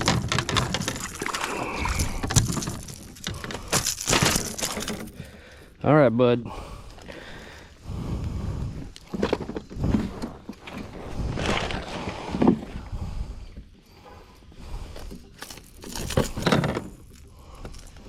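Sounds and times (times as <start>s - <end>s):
rustling and knocking handling noise: 0.0s - 5.3s, 15.0s - 18.0s.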